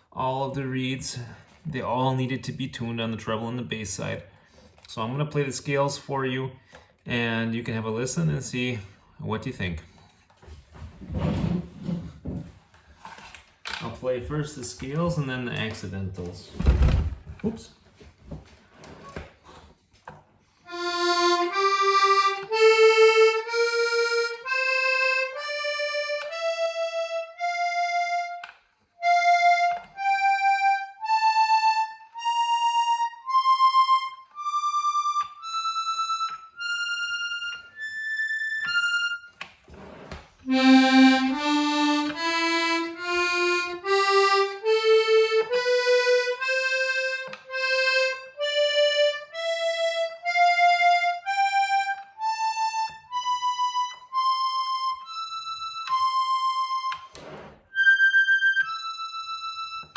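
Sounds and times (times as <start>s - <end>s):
accordion playing ascending scale: 20.7s - 39.4s, 40.5s - 59.9s.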